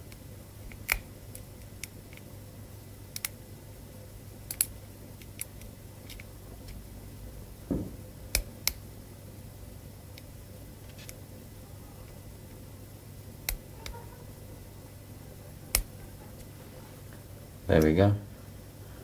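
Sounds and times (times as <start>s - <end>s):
dull knock: 7.7s - 8.0s.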